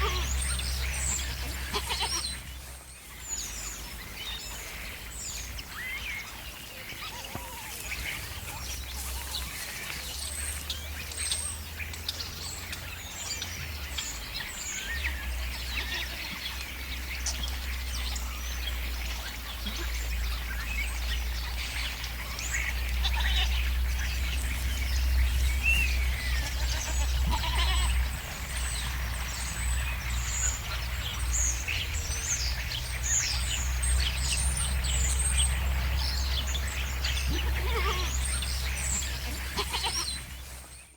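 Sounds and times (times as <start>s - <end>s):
goats bleating: 0.0s - 2.5s, 15.7s - 16.4s, 23.0s - 23.7s, 25.7s - 28.4s, 37.2s - 40.3s
starlings chattering: 0.0s - 40.9s.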